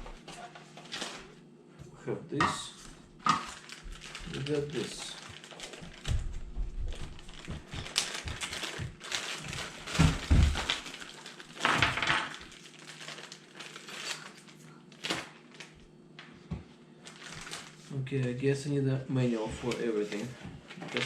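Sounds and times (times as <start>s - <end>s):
packaging rustling and crinkling: 2.7s - 15.8s, 17.0s - 18.0s, 19.4s - 21.0s.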